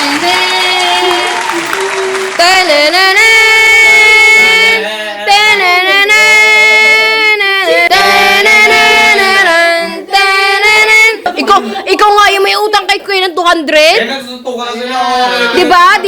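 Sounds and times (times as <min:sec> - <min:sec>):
high voice singing loudly: 0:00.0 - 0:11.3.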